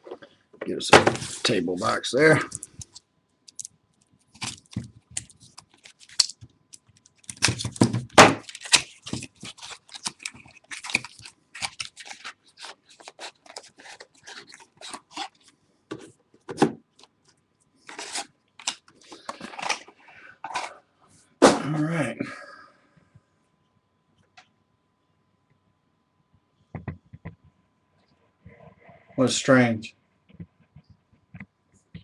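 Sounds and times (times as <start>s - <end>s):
plastic wrap and cardboard crinkling: 3.6s - 15.6s, 17.8s - 20.8s.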